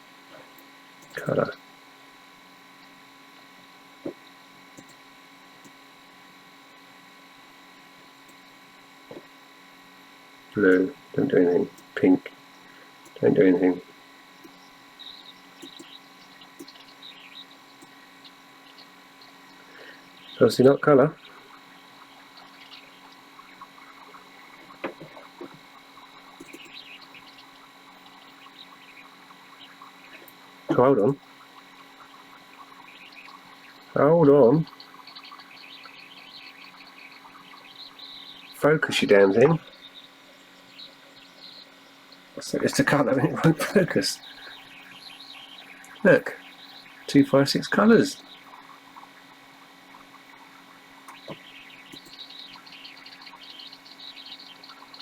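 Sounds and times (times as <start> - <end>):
faint electrical mains hum: 0.0 - 55.0
faint ticks: 2.8 - 5.0, 49.9 - 55.0
soft clicks: 4.8 - 5.0, 15.6 - 16.0, 26.3 - 27.3, 51.1 - 52.2.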